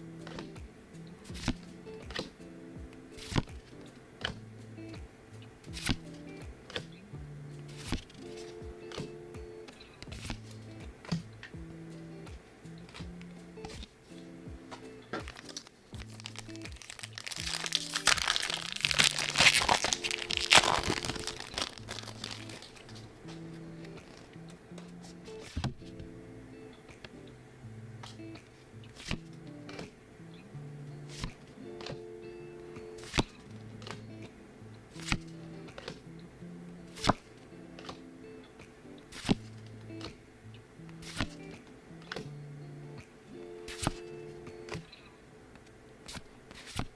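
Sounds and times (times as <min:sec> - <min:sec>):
background music: 0:00.0 - 0:45.1
foil wrapper crinkling: 0:15.2 - 0:23.1, 0:24.0 - 0:24.3.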